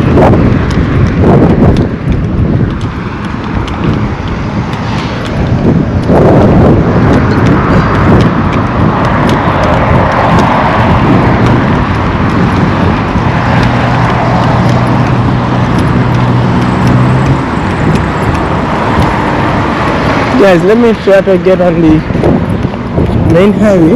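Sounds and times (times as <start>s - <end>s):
road traffic engines: 0.0s - 23.9s.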